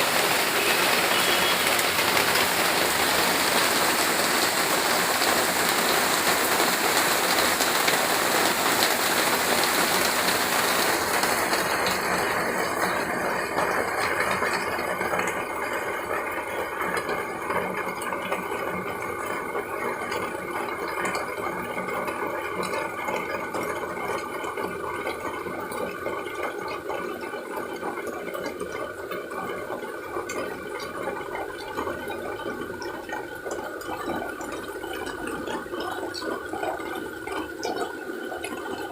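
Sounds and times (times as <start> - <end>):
water splashing: 0.0 - 15.7, 30.2 - 38.9
rain falling: 0.0 - 38.9.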